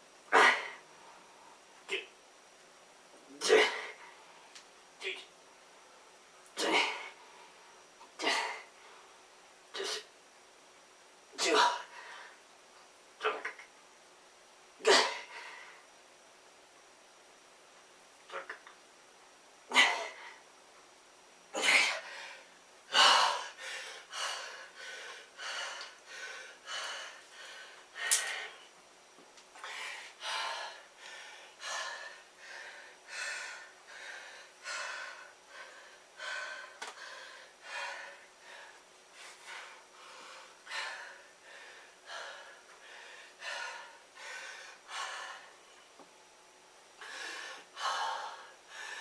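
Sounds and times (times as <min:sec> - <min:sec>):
man panting: 0:06.6 - 0:07.3, 0:19.7 - 0:20.4, 0:21.6 - 0:28.6, 0:29.6 - 0:45.6, 0:47.0 - 0:49.0.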